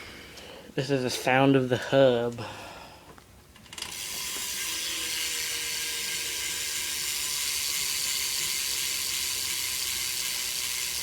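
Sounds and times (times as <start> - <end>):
bike freewheel ratchet buzzing: 3.6 - 11.0.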